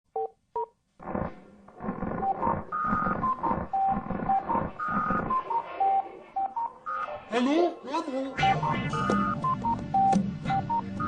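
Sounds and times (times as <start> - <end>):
electronic phone beeps tune: 2.2 - 7.2, 8.4 - 11.0
distorted pulsing music: 8.4 - 11.0.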